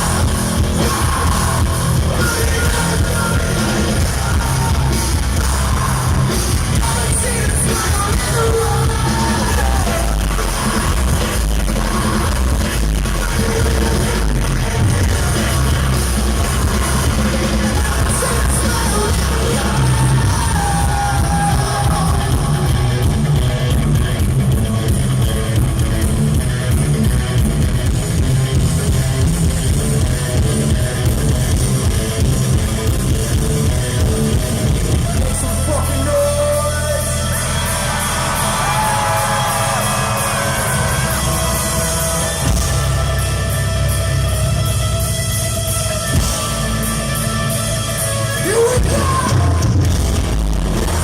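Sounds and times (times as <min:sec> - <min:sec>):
sung and yelled vocals: 0:00.0 - 0:23.6, 0:34.5 - 0:43.6, 0:48.3 - 0:51.0
punk rock band playing live: 0:00.0 - 0:51.0.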